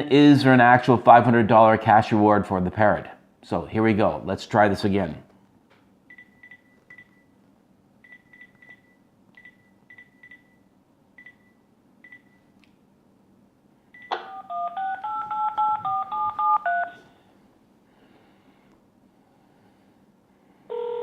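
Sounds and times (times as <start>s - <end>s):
phone keypad beeps: 6.1s - 7.3s, 8.0s - 10.6s, 11.2s - 12.4s, 14.0s - 17.0s
touch-tone dialing tones: 14.0s - 17.0s.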